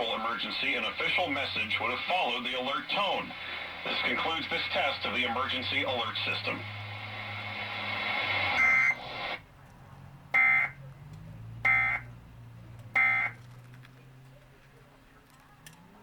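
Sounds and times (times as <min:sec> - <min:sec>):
harsh electronic bursts: 0:00.0 - 0:09.4
hiss-like noise: 0:02.9 - 0:09.4.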